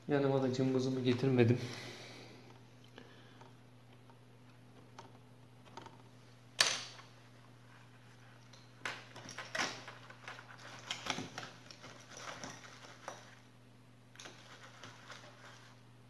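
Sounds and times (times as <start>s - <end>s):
small laptop parts clicking and scraping: 8.4s - 13.4s, 14.2s - 15.8s.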